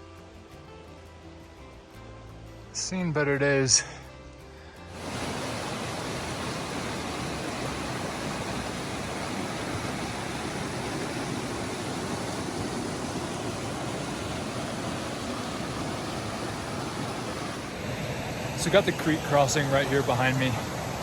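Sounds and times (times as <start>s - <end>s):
creek rushing: 4.8s - 21.0s.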